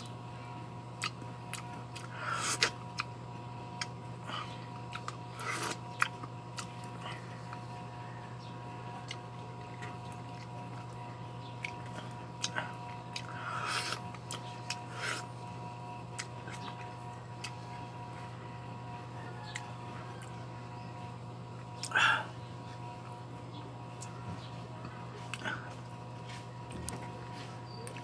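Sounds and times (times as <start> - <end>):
steady hum: 0.0 - 28.0
wet chewing of watermelon: 0.0 - 28.0.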